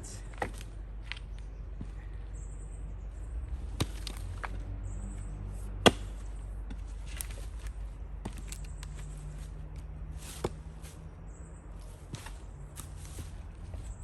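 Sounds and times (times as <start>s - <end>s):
axe chopping firewood: 3.7s - 4.6s, 5.8s - 9.1s, 9.8s - 10.9s.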